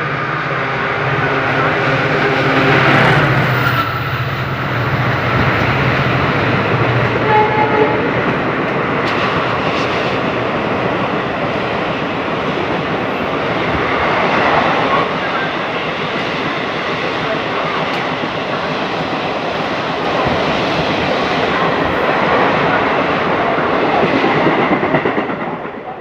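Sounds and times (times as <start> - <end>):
rush of wheels on rails: 0.0 - 26.0
train horn note: 7.2 - 8.2.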